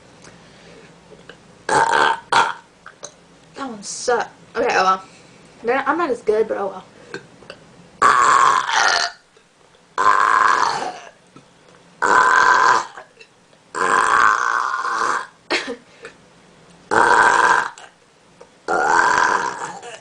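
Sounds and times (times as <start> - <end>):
girl burping: 18.7 - 20.0.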